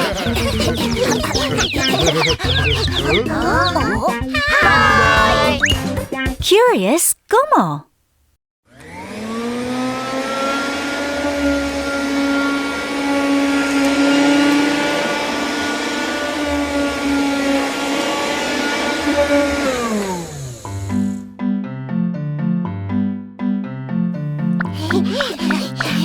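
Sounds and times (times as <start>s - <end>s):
vacuum cleaner motor whine: 8.8s - 20.7s.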